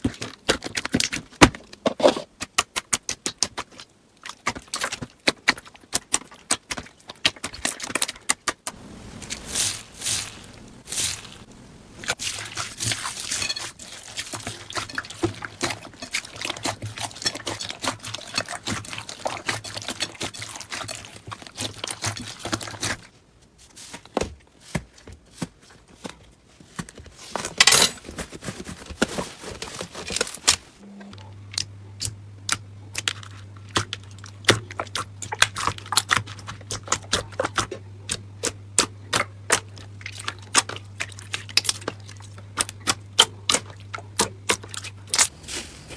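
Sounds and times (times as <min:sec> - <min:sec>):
slime squelch: 0:03.1 - 0:23.1
slime crackling: 0:08.7 - 0:23.1
low hum: 0:08.8 - 0:13.6.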